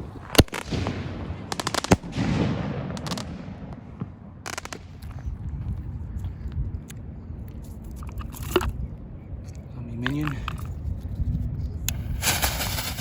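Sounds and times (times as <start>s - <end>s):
firework crackling pops: 0.0s - 5.2s, 11.9s - 13.0s
firework bang: 0.3s - 4.9s, 12.2s - 13.0s
firework hiss: 11.9s - 13.0s.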